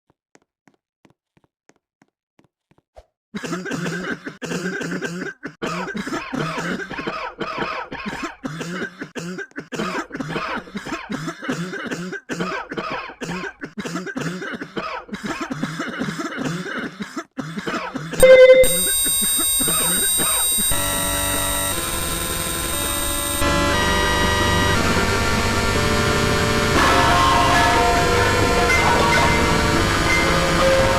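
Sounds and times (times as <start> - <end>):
person coughing: 3.4 - 20.6
electronic tones: 18.2 - 30.9.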